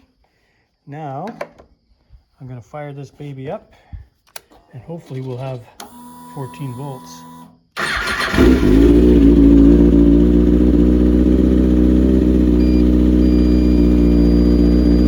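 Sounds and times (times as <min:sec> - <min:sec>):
electric starter cranking: 0:07.8 - 0:09.6, 0:12.3 - 0:15.0
motorcycle engine idling: 0:07.8 - 0:15.0.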